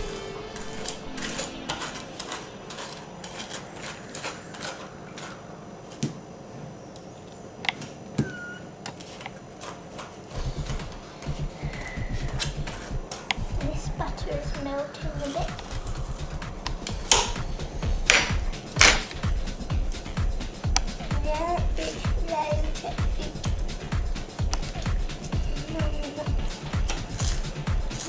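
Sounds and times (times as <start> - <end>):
knife scraping butter on toast: 0.6 - 5.4.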